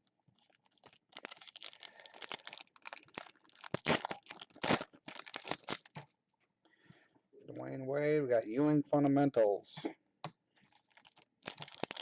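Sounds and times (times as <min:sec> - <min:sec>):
cards crinkling and rustling: 0:00.3 - 0:06.1, 0:10.7 - 0:12.0.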